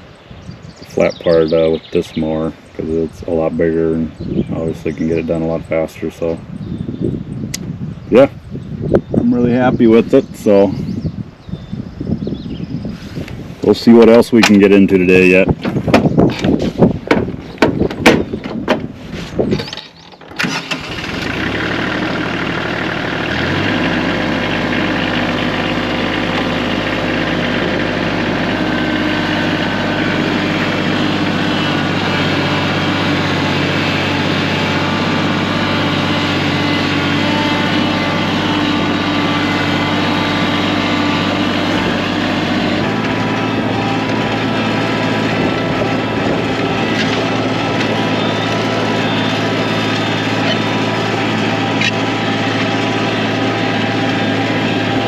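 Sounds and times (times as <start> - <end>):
engine cranking and idling: 13.4 - 55.0.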